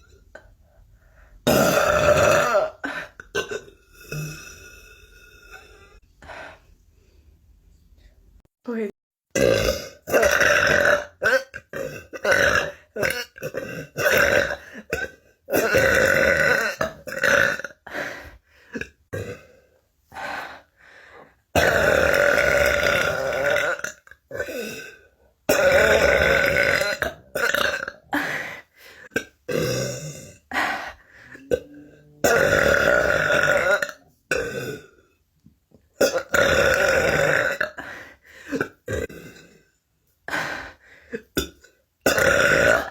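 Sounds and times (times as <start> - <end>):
person burping: 1.4 - 6.0, 9.3 - 17.9, 18.7 - 19.6, 21.5 - 35.1, 35.9 - 39.8, 41.2 - 42.9.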